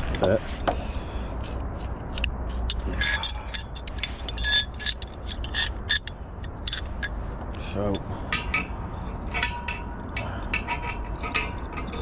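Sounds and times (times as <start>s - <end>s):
metal clamps clicking and clinking: 2.1s - 7.2s, 7.9s - 12.0s.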